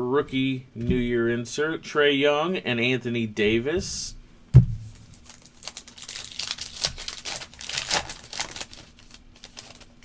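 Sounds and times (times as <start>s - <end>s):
wrapper tearing and crinkling: 4.9s - 10.0s.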